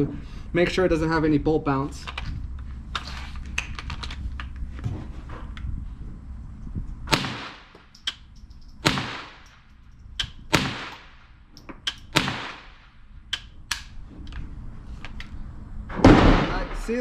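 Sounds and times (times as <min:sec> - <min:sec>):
pistol gunshots with echo: 0:07.1 - 0:07.7, 0:08.8 - 0:09.5, 0:10.5 - 0:11.3, 0:12.1 - 0:12.9, 0:16.0 - 0:16.9
light metallic clicks: 0:07.8 - 0:08.8.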